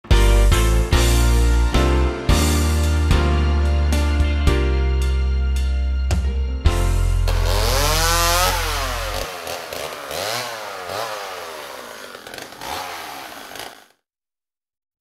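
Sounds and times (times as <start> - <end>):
small engine revving: 7.3 - 14.0.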